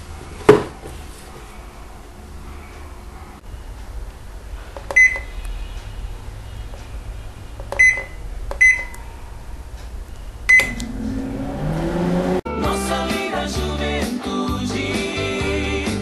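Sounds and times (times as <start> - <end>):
steady low hum: 0.0 - 12.4
microwave beeping: 4.8 - 5.5, 7.6 - 9.1, 10.1 - 12.4
soft music: 12.4 - 16.0.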